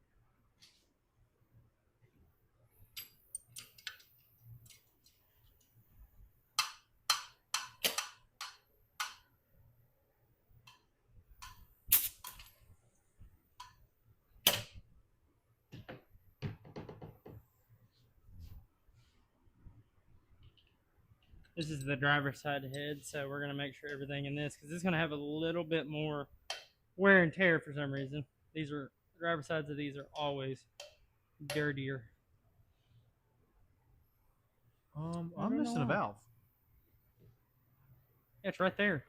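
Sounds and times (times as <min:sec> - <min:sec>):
metal parts clicking and knocking: 0:02.9 - 0:05.2.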